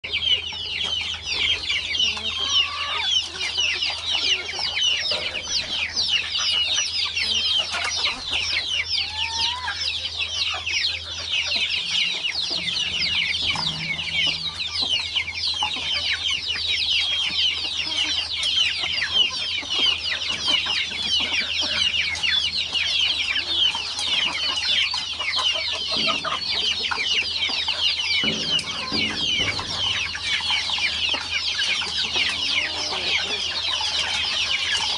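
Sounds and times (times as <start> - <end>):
chickens clucking: 0.0 - 34.9
chicks peeping in chorus: 0.0 - 34.9.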